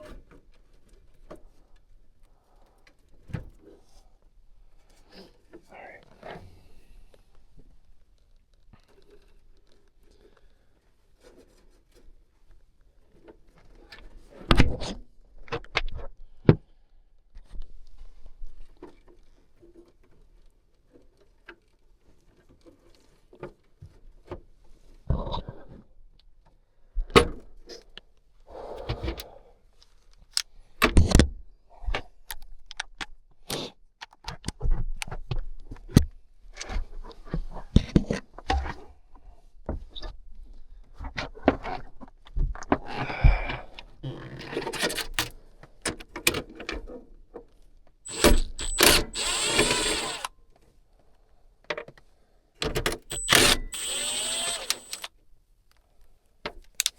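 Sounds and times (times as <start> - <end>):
tools and wiring clicking: 44.5 - 46.3, 48.1 - 50.3, 52.6 - 55.1, 56.5 - 56.9.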